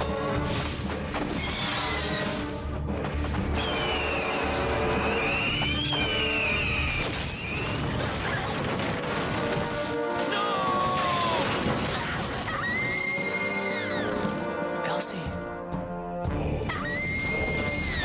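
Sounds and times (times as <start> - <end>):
dramatic action music: 0.0 - 18.0
crashing and smashing effects: 7.0 - 13.0.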